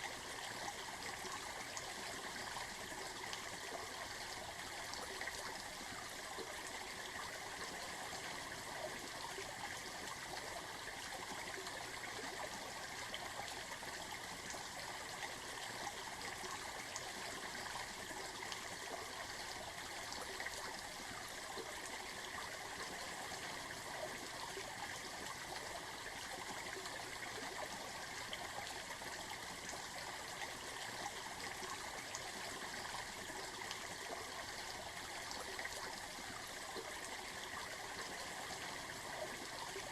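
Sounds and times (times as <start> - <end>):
stream flowing: 0.0 - 39.9.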